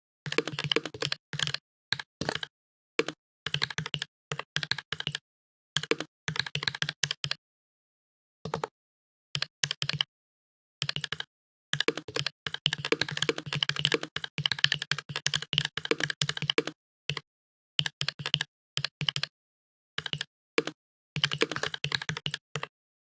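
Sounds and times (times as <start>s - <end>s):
computer keyboard typing: 0.3s - 5.2s, 9.4s - 10.1s, 10.8s - 17.2s, 17.8s - 19.3s, 20.0s - 22.7s.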